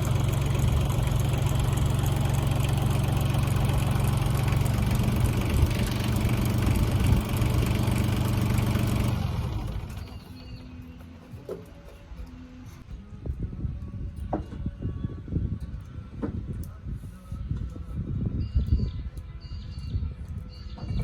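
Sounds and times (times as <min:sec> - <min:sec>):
tractor engine running: 0:00.0 - 0:12.9.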